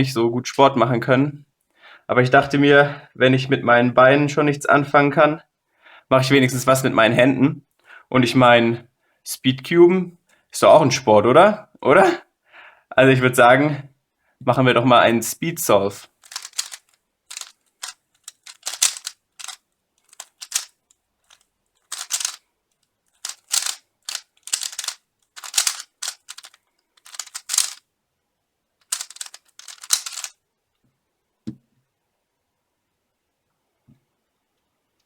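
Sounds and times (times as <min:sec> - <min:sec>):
puzzle cube clicking: 0:16.0 - 0:22.4, 0:23.1 - 0:27.8, 0:28.8 - 0:30.4.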